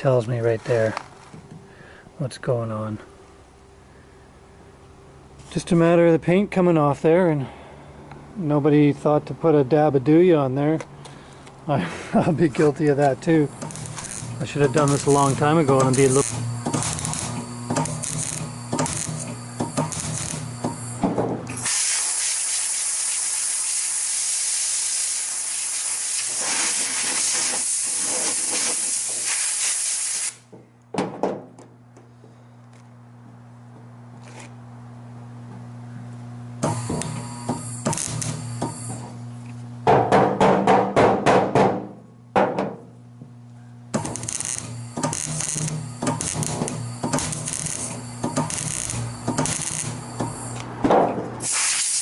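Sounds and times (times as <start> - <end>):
low steady hum: 0.0 - 21.6
spray hissing: 21.6 - 30.4, 51.4 - 52.0.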